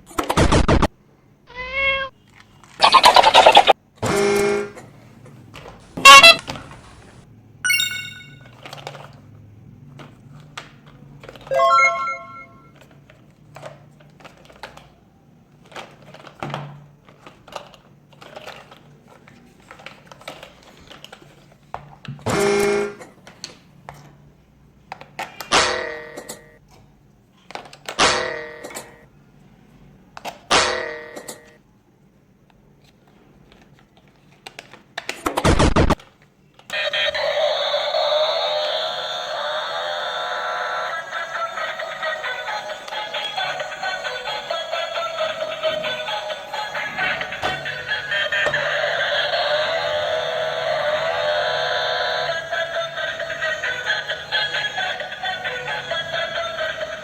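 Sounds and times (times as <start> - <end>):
electronic toy beeps and chimes: 7.7 - 8.6, 11.5 - 12.8
plastic toy clicks and knocks: 15.6 - 21.4.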